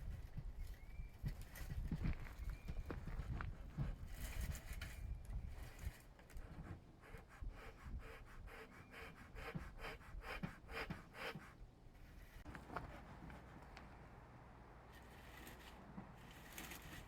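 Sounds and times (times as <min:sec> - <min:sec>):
bellows pumping puffs of air: 0:06.4 - 0:11.6.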